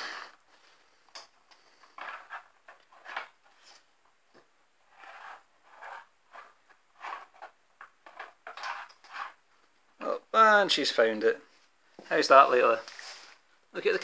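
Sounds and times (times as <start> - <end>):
plastic toy scraping and clattering: 1.8 - 3.8, 4.9 - 9.4.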